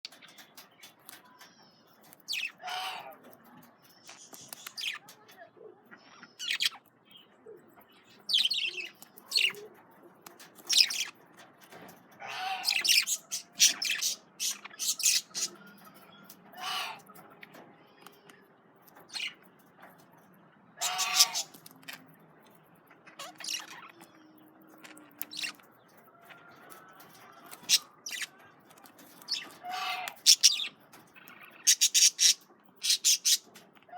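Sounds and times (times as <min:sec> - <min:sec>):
budgerigars chirping and squawking: 0:02.0 - 0:03.4, 0:04.0 - 0:05.2, 0:06.0 - 0:06.9, 0:08.0 - 0:09.6, 0:10.4 - 0:11.2, 0:12.2 - 0:18.2, 0:18.9 - 0:19.4, 0:20.8 - 0:22.0, 0:22.9 - 0:24.2, 0:24.9 - 0:33.9.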